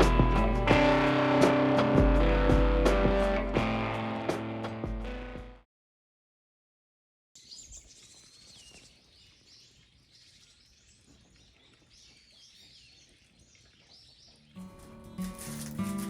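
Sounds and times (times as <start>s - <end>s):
small birds chirping: 7.4s - 15.8s.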